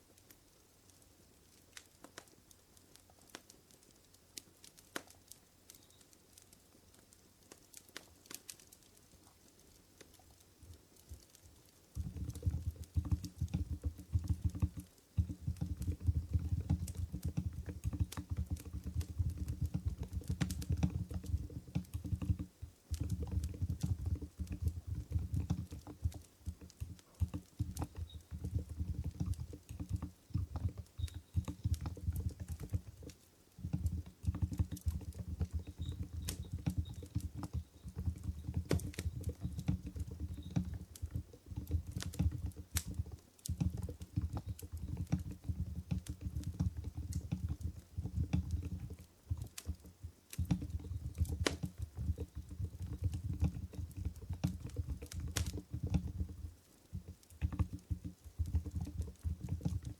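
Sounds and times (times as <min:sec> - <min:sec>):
muffled keyboard typing: 0:11.0 - 0:59.9.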